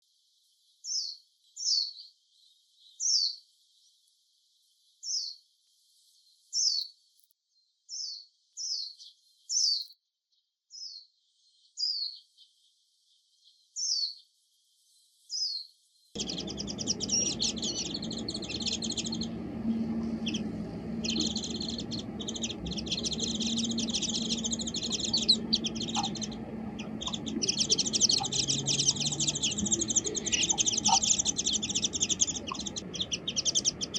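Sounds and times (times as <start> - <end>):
birds high falling calls: 16.2 - 33.9
rapid high bird twittering: 16.2 - 33.9.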